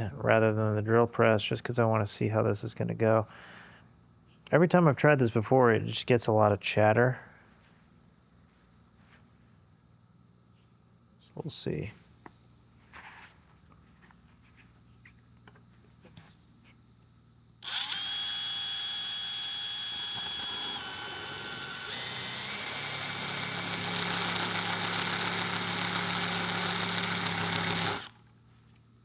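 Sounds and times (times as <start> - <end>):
drill bit chattering: 17.6 - 28.1
electric drill whining into steel: 17.6 - 28.2.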